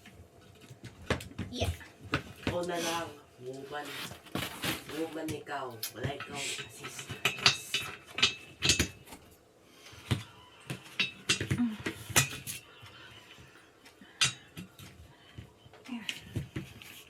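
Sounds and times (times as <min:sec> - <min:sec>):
chair parts clicking and knocking: 0:00.0 - 0:02.7, 0:05.0 - 0:09.4, 0:10.0 - 0:12.8, 0:13.5 - 0:17.0.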